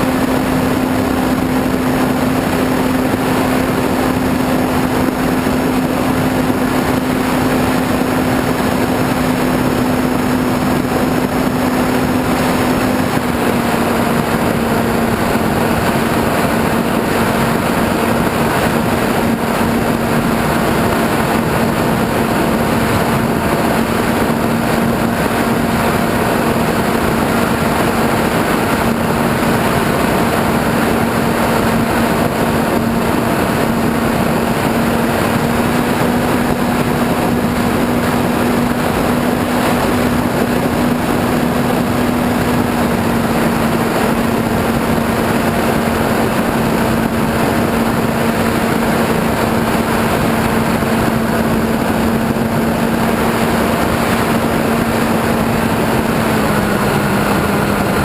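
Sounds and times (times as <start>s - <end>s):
model airplane motor droning: 0.0s - 58.0s
wind rushing over camera: 0.0s - 58.0s.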